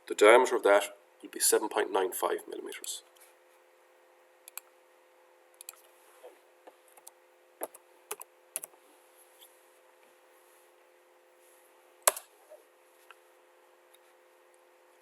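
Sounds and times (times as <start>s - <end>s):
faint steady hum: 0.0s - 15.0s
mouse clicks: 4.5s - 4.7s.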